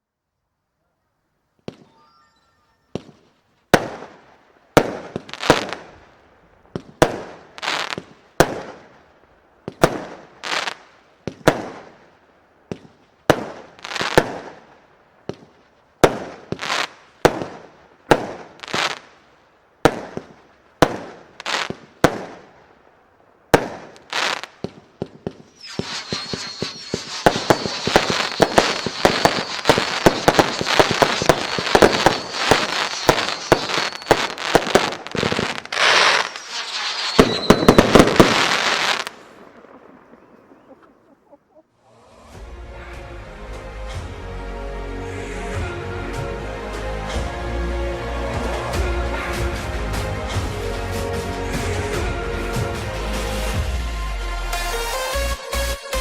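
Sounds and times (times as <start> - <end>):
firework bangs and crackles: 1.6 - 2.1, 2.9 - 41.2, 45.6 - 54.6
firework whistle: 1.7 - 3.2, 25.3 - 40.9.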